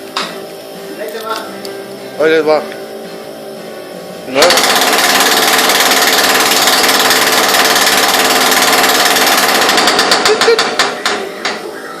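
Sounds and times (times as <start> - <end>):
jackhammer hammering: 4.4 - 11.6.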